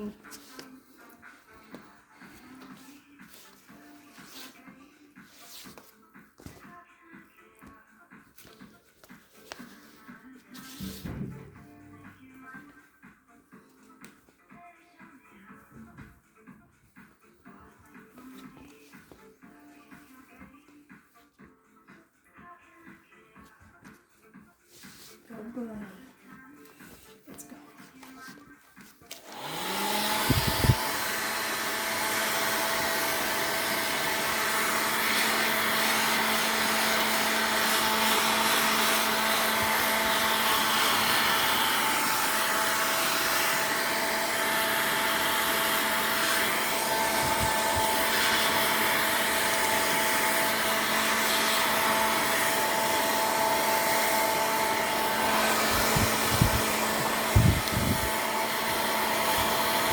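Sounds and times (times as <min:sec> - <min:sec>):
hair dryer whining hum: 0:29.1 - 0:59.9.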